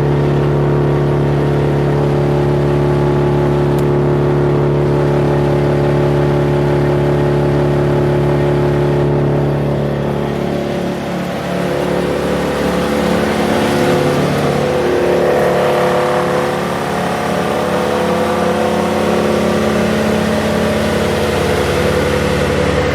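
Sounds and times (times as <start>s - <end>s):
wood chipper engine running: 0.0s - 22.9s.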